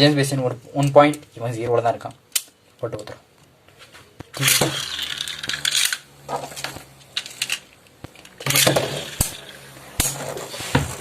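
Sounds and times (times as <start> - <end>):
spinning tops clattering: 4.4 - 10.6
spinning tops humming: 4.4 - 10.6.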